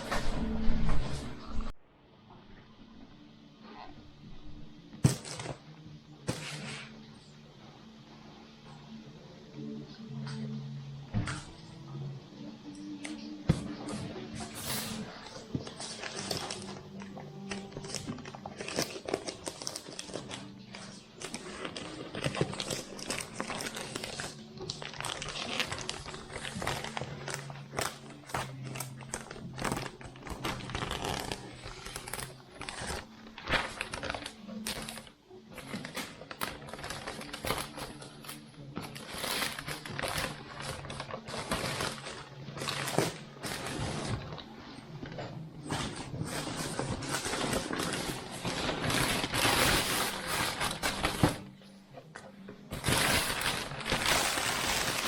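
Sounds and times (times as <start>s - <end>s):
plastic and cardboard crinkling: 13.2s - 55.0s.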